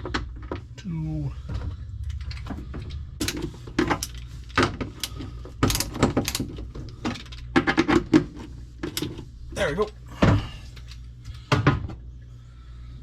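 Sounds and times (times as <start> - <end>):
clicks and knocks of parts handled: 1.5 - 11.9.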